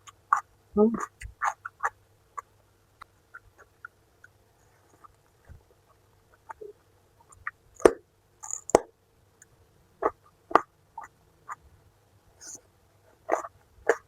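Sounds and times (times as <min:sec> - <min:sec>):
person chewing with wet smacks: 0:00.0 - 0:08.0.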